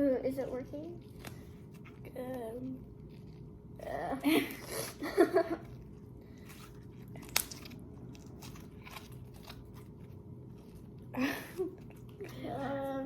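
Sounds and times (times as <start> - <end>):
slime crackling and squishing: 5.8 - 13.0.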